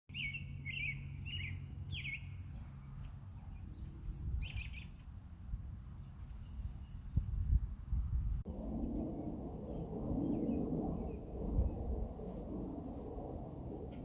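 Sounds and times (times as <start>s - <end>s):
bird chirping: 0.1s - 5.1s, 6.0s - 7.5s
low steady rumble: 0.2s - 14.0s.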